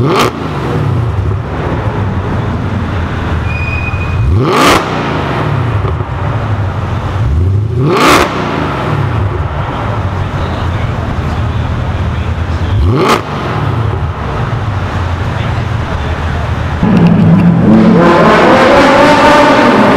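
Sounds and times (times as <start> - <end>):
car engine revving in tunnel: 0.0 - 19.9.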